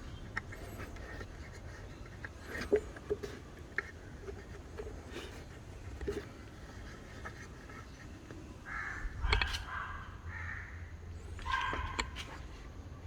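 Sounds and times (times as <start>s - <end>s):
crow cawing: 8.7s - 10.9s.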